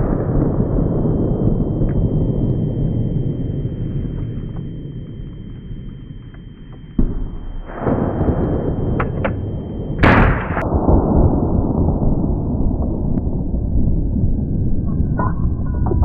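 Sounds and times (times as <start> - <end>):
steady low rumble: 0.0 - 16.0
loud gunshot: 7.0 - 9.4, 10.0 - 12.2.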